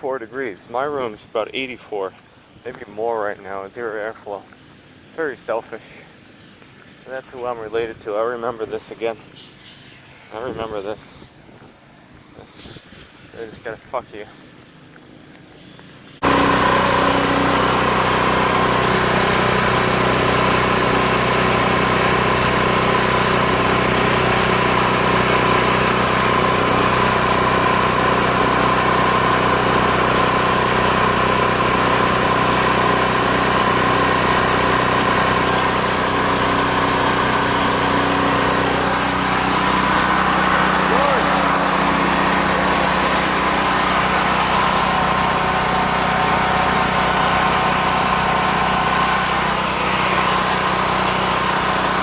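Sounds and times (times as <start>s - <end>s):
generator engine drone: 16.2s - 52.0s.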